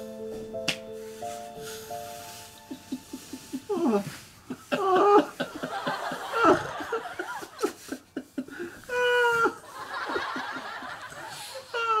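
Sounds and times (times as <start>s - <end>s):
people laughing: 2.7s - 12.0s.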